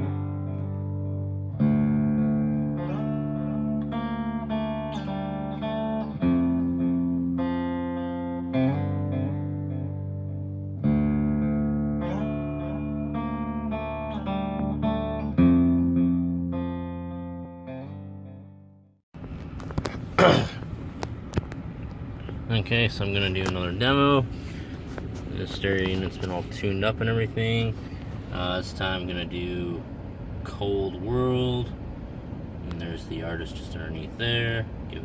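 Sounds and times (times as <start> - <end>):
plucked guitar melody: 0.0 - 19.0.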